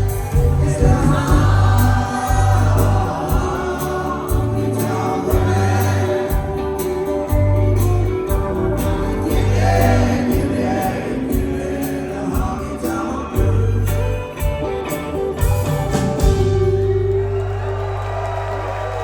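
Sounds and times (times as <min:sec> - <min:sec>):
person singing: 0:00.0 - 0:14.6
percussion beat: 0:00.0 - 0:17.0
bass line: 0:00.0 - 0:19.0
guitar: 0:00.0 - 0:19.0.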